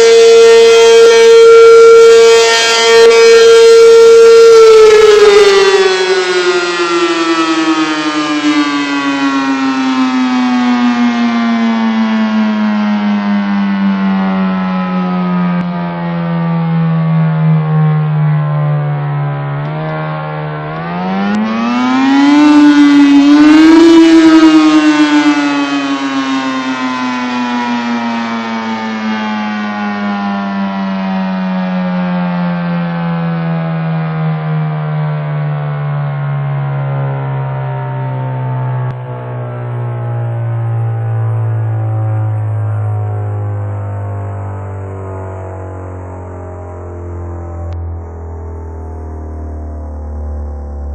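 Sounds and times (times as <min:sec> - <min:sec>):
warning siren winding: 0:00.0 - 0:17.9, 0:19.6 - 0:33.5.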